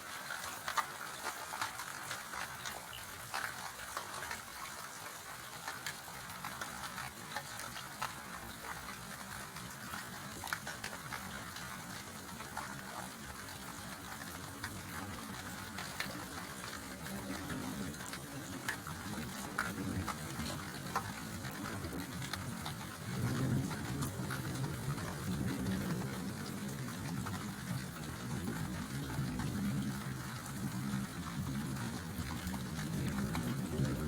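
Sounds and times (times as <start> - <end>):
steady rain: 0.0 - 34.0.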